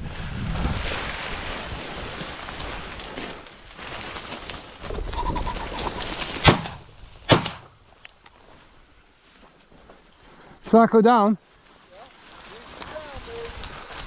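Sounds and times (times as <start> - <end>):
pheasant calling: 5.0 - 6.3
shotgun shots: 6.4 - 7.7.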